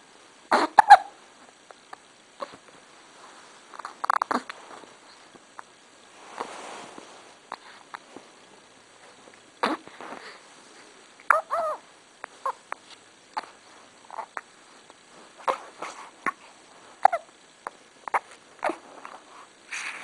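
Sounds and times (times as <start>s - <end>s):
person hiccuping: 0.5s - 1.2s.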